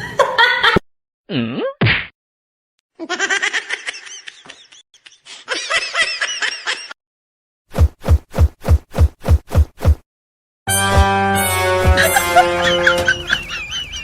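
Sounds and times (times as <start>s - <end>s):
high-pitched laughter: 3.0s - 7.0s, 12.0s - 14.0s.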